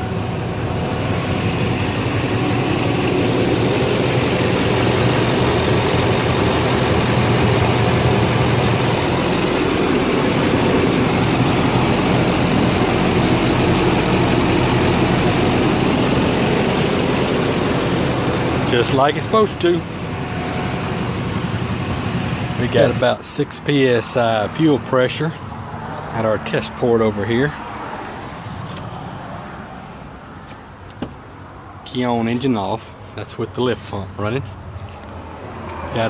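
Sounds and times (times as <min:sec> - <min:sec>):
diesel engine running: 0:00.0 - 0:36.0.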